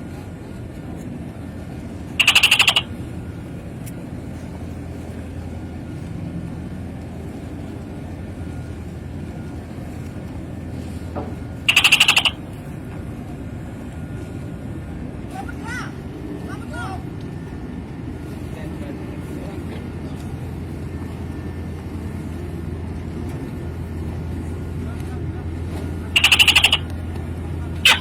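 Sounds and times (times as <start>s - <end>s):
low engine rumble: 0.0s - 28.0s
high rapidly pulsing chirps: 2.2s - 2.9s, 11.7s - 12.4s, 26.2s - 26.9s.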